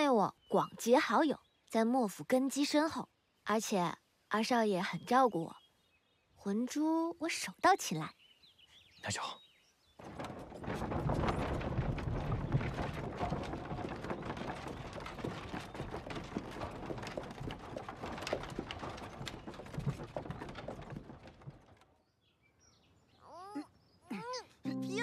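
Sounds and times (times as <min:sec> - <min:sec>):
horse hooves clattering: 0:10.0 - 0:22.1.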